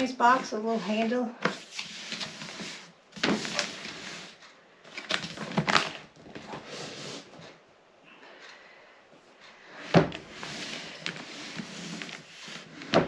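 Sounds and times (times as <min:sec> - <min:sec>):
rubbing and scraping on cardboard: 0:00.0 - 0:04.5, 0:06.5 - 0:07.5, 0:10.2 - 0:13.0.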